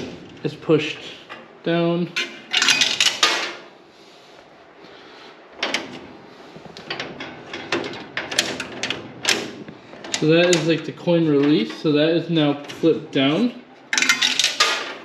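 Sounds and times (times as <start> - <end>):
coin mechanism clicking and clattering: 2.2 - 3.6, 13.9 - 15.0.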